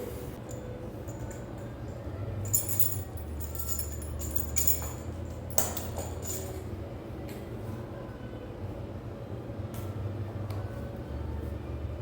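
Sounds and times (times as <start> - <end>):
metallic clinks of gym equipment: 2.4 - 6.7.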